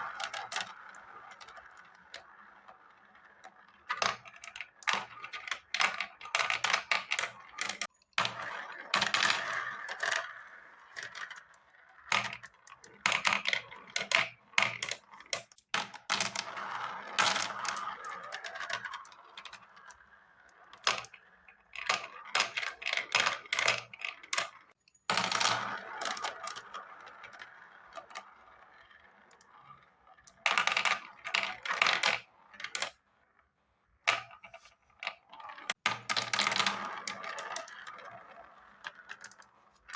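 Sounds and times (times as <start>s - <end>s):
marbles clattering down a track: 0.0s - 33.0s, 34.1s - 39.9s.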